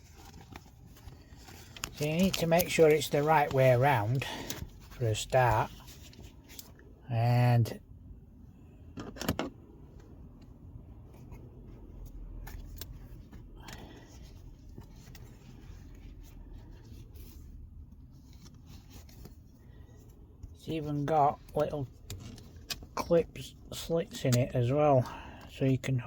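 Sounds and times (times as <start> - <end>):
leather rustling: 0.0 - 6.7
low steady hum: 0.0 - 26.0.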